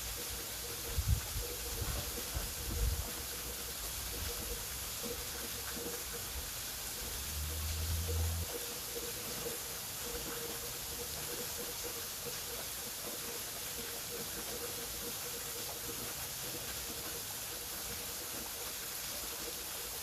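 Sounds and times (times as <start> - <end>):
waterfall rushing: 4.8 - 20.0.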